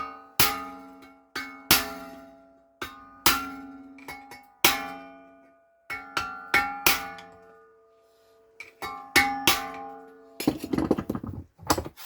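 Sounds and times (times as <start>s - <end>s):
metal clattering rattle: 10.4s - 12.0s.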